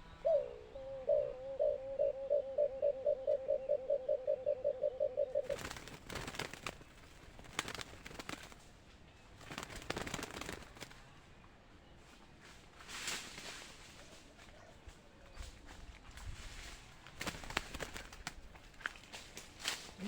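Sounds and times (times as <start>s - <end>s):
dove cooing: 0.0s - 6.3s
faint rustles: 11.9s - 20.0s.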